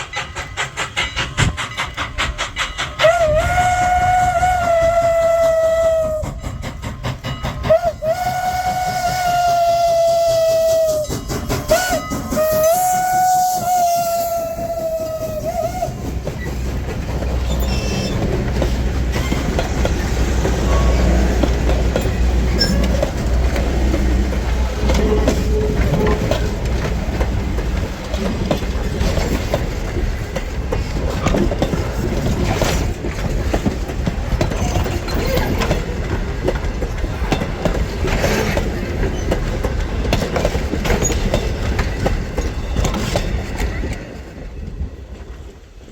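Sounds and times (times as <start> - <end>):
train rolling past rumble: 0.0 - 45.9
wheels clicking over rail joints: 0.0 - 45.9
steam whistle blasts: 3.0 - 6.4, 7.6 - 16.1.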